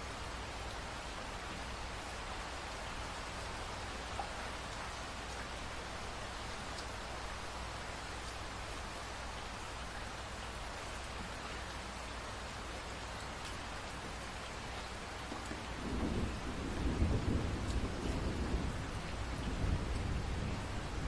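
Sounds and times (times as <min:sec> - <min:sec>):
steady rain hiss: 0:00.0 - 0:21.0
low rumble of thunder: 0:15.4 - 0:21.0.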